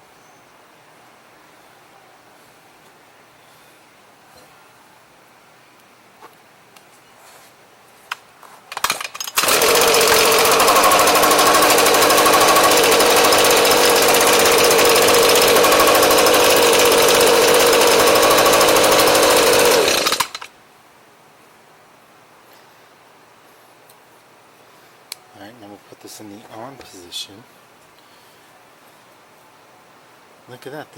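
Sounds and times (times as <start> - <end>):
blower engine buzzing: 9.4 - 20.5.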